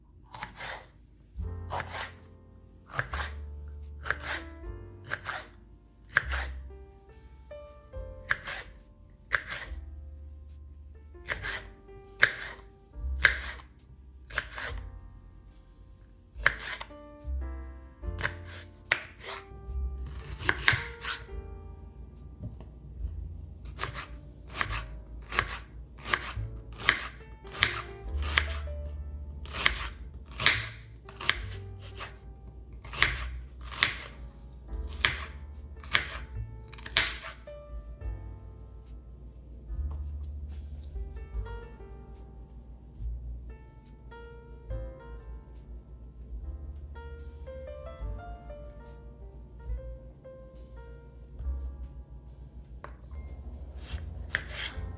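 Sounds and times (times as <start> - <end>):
soft background music: 0.0 - 54.9
knife chopping food: 0.3 - 0.9, 1.7 - 2.3, 2.9 - 6.6, 8.2 - 9.8, 11.2 - 13.7, 14.3 - 14.9, 16.4 - 16.9, 18.1 - 21.3, 23.5 - 37.5, 53.6 - 54.9.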